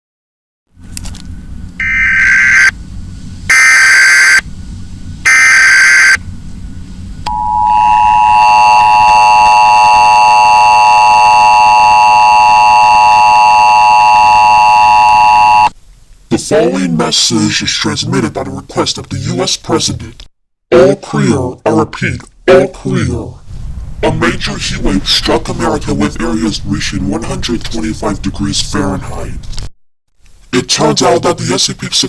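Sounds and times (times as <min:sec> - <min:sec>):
low background hum: 0:00.8 - 0:19.4
digital data tone bursts: 0:01.8 - 0:02.7, 0:03.5 - 0:04.4, 0:05.3 - 0:06.2, 0:07.3 - 0:15.7
two-tone attention signal: 0:01.8 - 0:02.7, 0:03.5 - 0:04.4, 0:05.3 - 0:06.2, 0:07.3 - 0:15.7.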